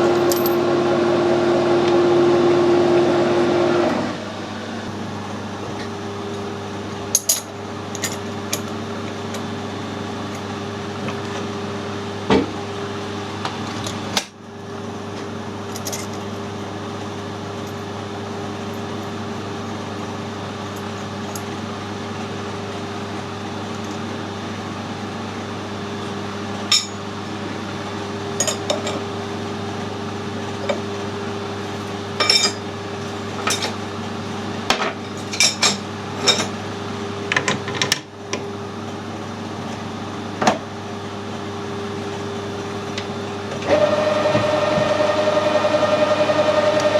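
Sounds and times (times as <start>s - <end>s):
metal lathe humming: 0.0s - 6.8s, 43.5s - 46.9s
metal parts clinking: 0.2s - 0.6s.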